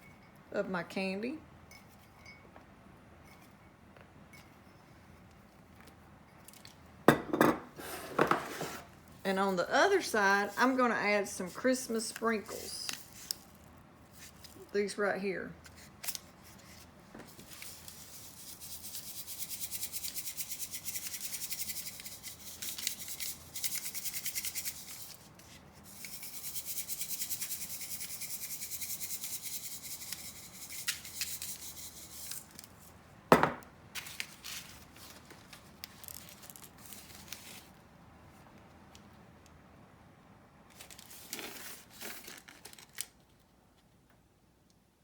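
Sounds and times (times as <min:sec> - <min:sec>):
sprinkles rattling in plastic shaker: 0:17.4 - 0:32.6.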